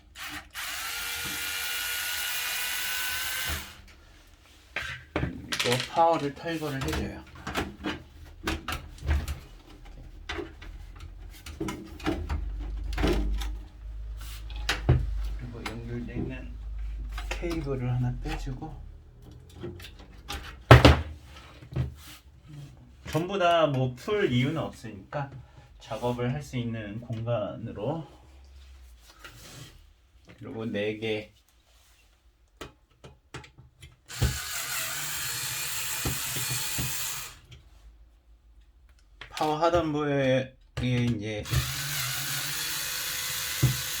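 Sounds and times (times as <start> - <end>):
electric screwdriver running: 0.2 - 3.8, 34.1 - 37.4, 41.5 - 44.0.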